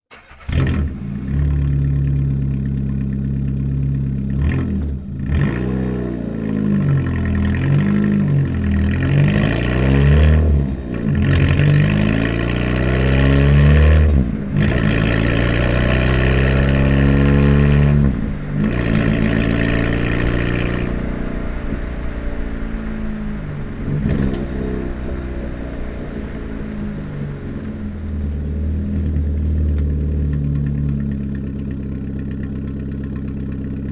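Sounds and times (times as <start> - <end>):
car engine with loud exhaust revving: 0.1 - 33.9.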